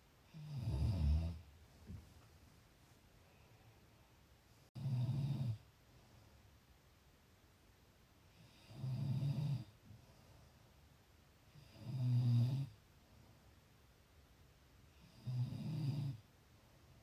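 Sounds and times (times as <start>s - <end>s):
person snoring: 0.3s - 1.4s.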